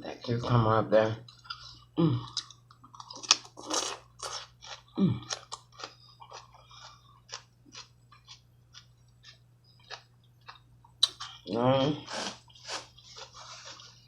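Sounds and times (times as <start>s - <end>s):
wet chewing and crunching: 1.2s - 14.0s
person humming mm: 2.0s - 2.4s, 5.0s - 5.3s.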